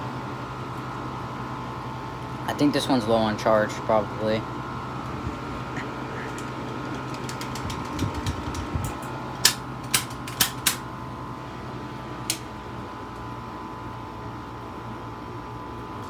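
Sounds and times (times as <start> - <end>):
air conditioner humming: 0.0 - 16.0
sharp clicks: 6.2 - 10.8.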